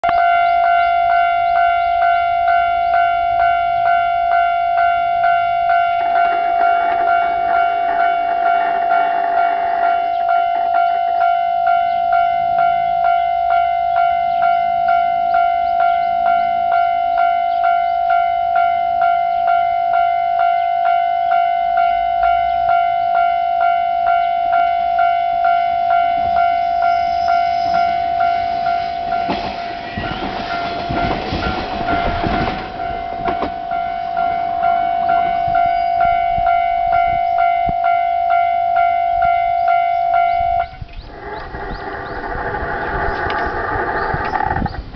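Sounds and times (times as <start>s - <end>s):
level-crossing alarm ringing: 0.0s - 44.2s
lower alarm tone: 0.1s - 43.0s
approaching train: 0.1s - 44.9s.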